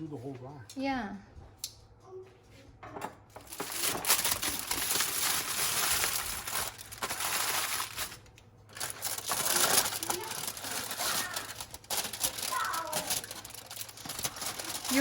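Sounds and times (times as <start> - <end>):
aluminium foil crinkling: 3.3 - 15.0.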